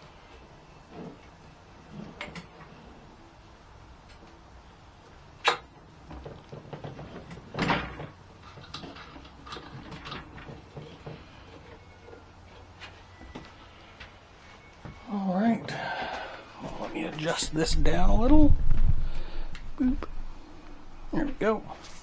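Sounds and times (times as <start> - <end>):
hard parts knocking and clattering: 6.0 - 11.9.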